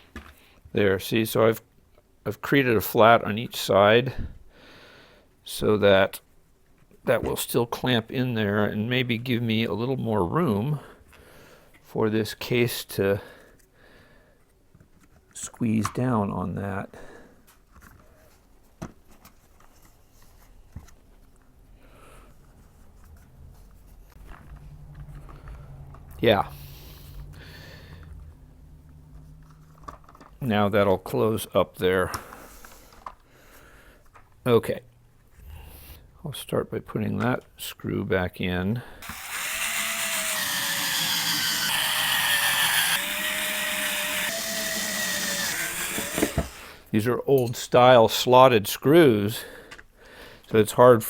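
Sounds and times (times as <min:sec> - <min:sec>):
electric screwdriver motor whining: 0:39.0 - 0:46.8.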